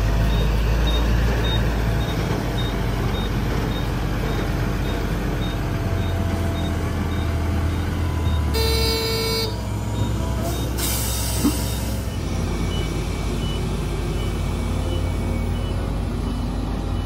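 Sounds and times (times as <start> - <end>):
heavy diesel engine running: 0.0 - 17.0
short horn toot: 8.5 - 9.6.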